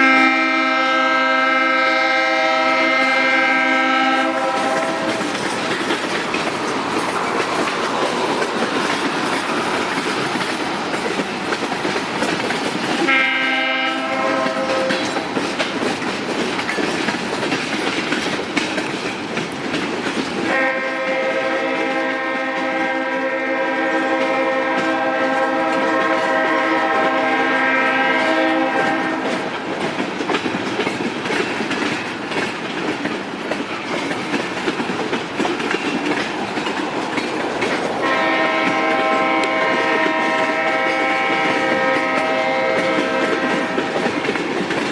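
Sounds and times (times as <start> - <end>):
train horn blasts: 0.0 - 5.3, 13.0 - 15.3, 20.5 - 29.5, 38.0 - 44.1
train wheels clacking on rails: 0.0 - 44.9.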